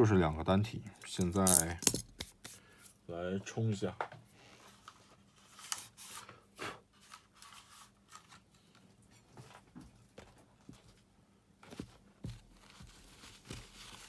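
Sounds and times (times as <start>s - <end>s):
soft rustling: 10.6s - 14.0s.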